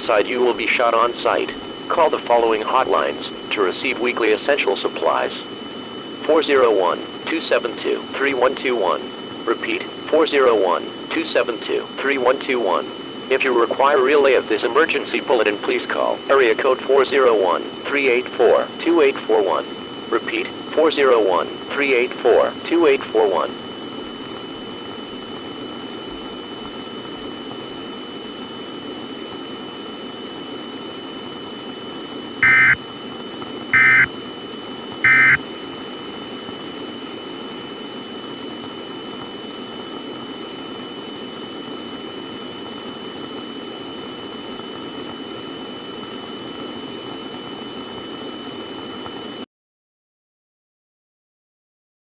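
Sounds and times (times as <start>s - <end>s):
broadcast static hiss: 0.0s - 48.9s
data tone bursts: 32.4s - 32.9s, 33.7s - 34.2s, 35.0s - 35.5s
faint high-pitched whine: 32.4s - 32.9s, 33.5s - 34.3s, 34.9s - 35.6s.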